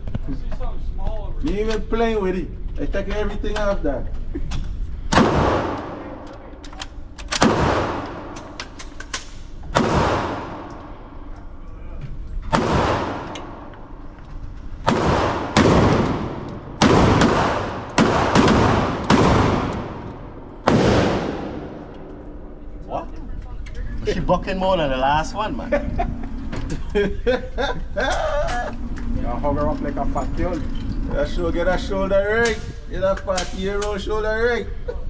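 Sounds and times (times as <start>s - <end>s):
loud gunshots with echo: 5.1s - 6.2s, 7.3s - 8.6s, 9.7s - 11.2s, 12.5s - 13.7s, 14.8s - 22.6s.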